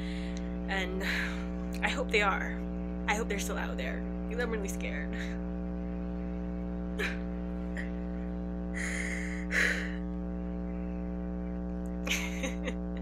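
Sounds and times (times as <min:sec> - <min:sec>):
breathy gasps: 0:00.0 - 0:00.5, 0:08.8 - 0:10.0
steady electrical hum: 0:00.0 - 0:13.0.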